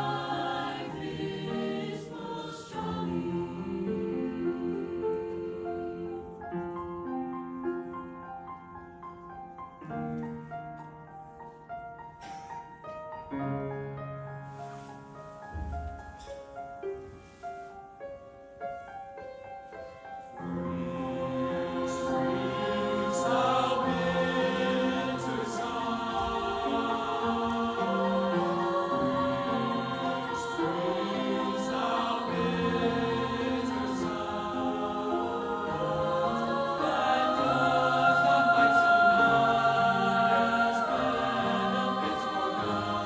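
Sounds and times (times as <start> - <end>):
choir singing in parts: 0.0 - 7.3, 20.0 - 43.0.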